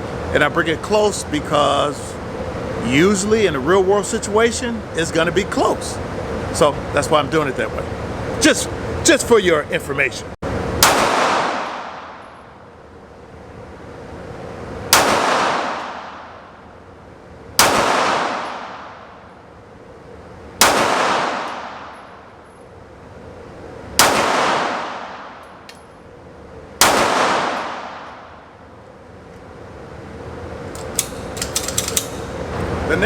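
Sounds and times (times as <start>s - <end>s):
pistol shots with echo: 10.8s - 12.2s, 14.9s - 16.4s, 17.6s - 19.1s, 20.6s - 22.0s, 24.0s - 25.4s, 26.8s - 28.4s.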